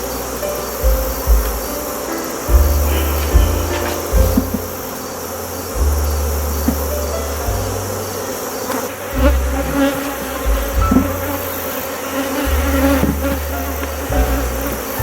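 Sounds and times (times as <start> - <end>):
low rumble: 0.0 - 8.4
honeybees buzzing: 0.0 - 15.0
knocks: 2.5 - 4.9, 10.4 - 11.3.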